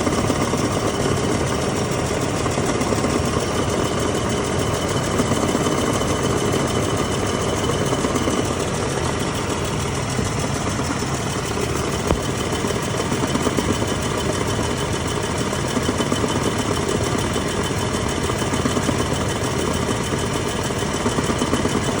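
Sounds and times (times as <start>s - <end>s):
vehicle idling: 5.9s - 16.0s.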